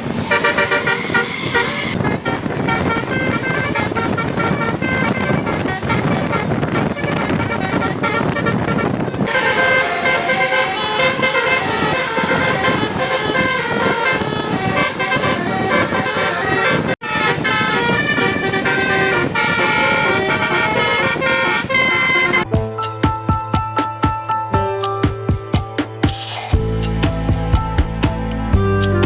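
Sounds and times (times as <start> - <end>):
multi-tone air horn melody: 0.0 - 23.0
vehicle and street noise: 0.0 - 29.0.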